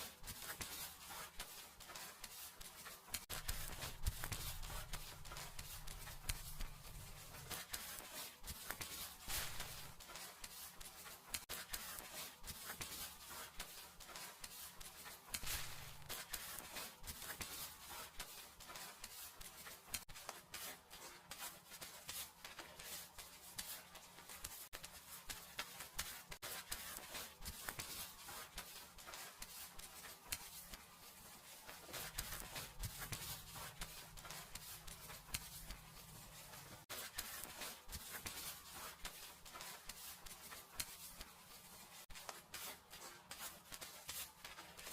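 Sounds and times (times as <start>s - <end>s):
fingers rubbing through hair: 0.0s - 44.9s.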